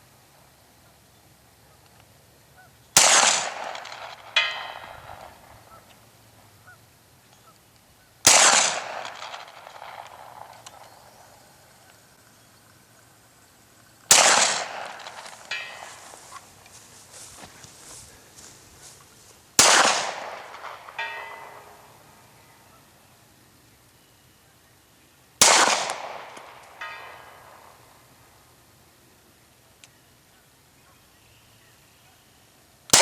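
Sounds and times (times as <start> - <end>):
gunshots with echo: 3.0 - 5.8, 8.3 - 11.2, 14.1 - 16.2, 19.6 - 22.1, 25.4 - 27.8
distant steel gong ringing: 15.4 - 16.4, 20.5 - 22.7.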